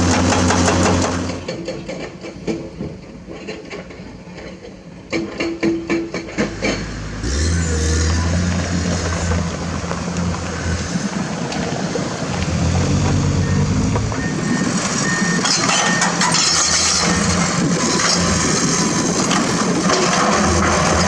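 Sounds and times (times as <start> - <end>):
excavator diesel engine revving: 0.0 - 1.6, 6.4 - 21.0.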